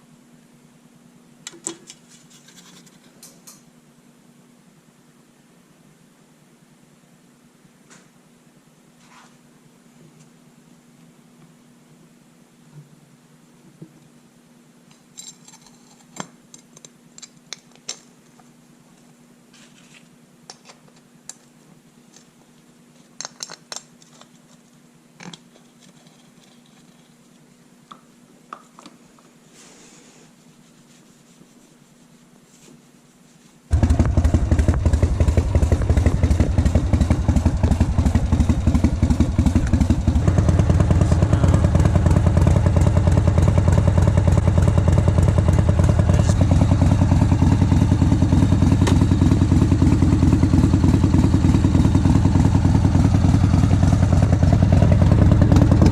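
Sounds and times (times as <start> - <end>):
tools and parts clicking: 15.0 - 18.1, 23.2 - 27.2
motorcycle engine running loud: 33.7 - 55.9.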